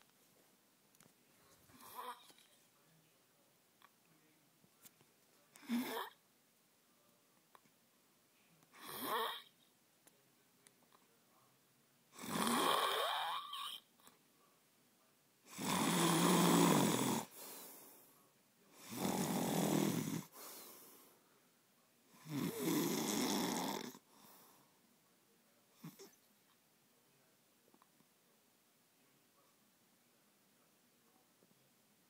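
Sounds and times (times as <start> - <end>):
man snoring loudly: 12.2 - 13.4, 15.5 - 17.3, 18.8 - 20.3, 22.2 - 24.0.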